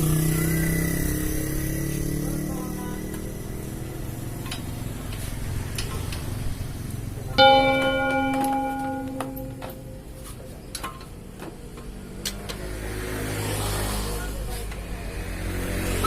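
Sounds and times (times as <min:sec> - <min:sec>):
scooter engine: 0:00.0 - 0:16.0
loud metallic clang ringing: 0:07.4 - 0:10.2.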